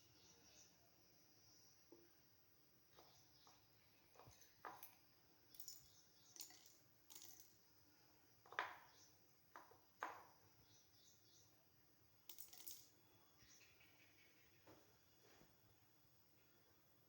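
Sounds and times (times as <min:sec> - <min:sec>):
objects knocking and clicking: 0:02.9 - 0:07.6, 0:08.4 - 0:08.9, 0:09.5 - 0:10.3, 0:12.3 - 0:12.9.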